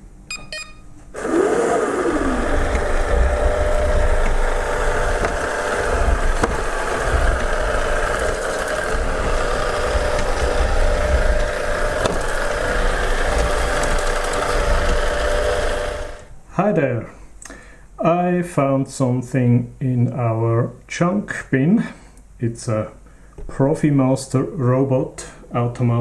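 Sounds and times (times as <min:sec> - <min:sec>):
robot vacuum cleaner running: 0:01.2 - 0:16.3.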